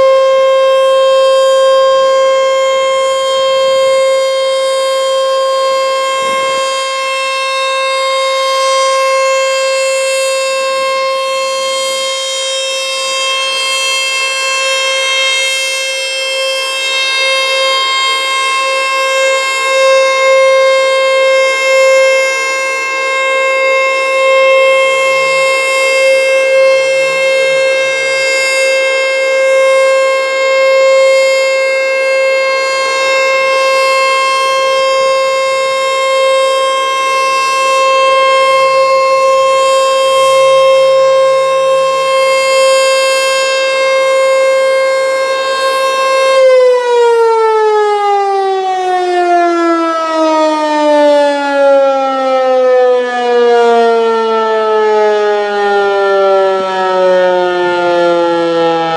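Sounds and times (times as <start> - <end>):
outdoor warning siren: 0.0 - 58.9.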